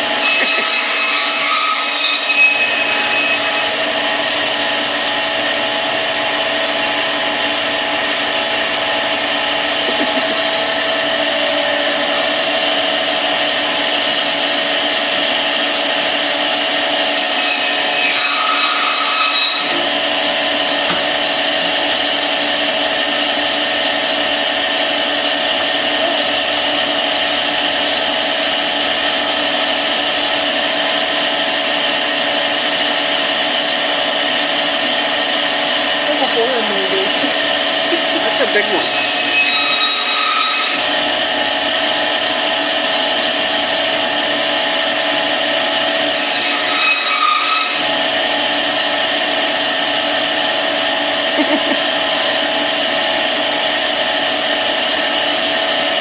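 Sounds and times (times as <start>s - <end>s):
band saw cutting meat: 0.0s - 56.0s.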